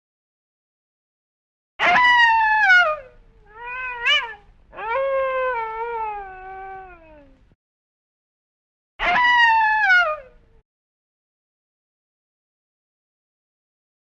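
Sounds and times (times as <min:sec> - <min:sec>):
wolf howling: 0:01.8 - 0:07.4, 0:09.0 - 0:10.4.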